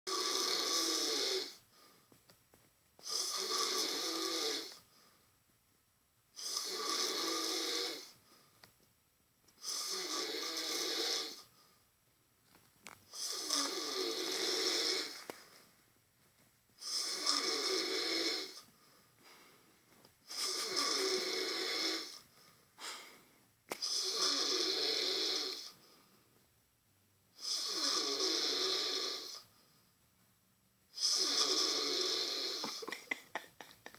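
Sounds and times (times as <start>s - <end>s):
person snoring hard: 0.1s - 1.6s, 3.0s - 4.8s, 6.4s - 8.1s, 9.6s - 11.4s, 13.2s - 15.2s, 16.8s - 18.6s, 20.3s - 22.2s, 23.8s - 25.7s, 27.4s - 29.4s, 31.0s - 33.3s.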